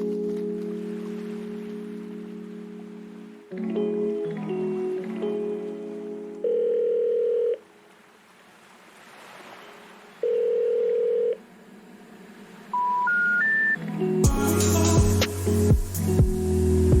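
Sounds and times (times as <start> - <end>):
background music: 0.0 - 7.4, 12.8 - 17.0
electronic beeps: 12.7 - 13.8
faint hiss: 14.3 - 16.9.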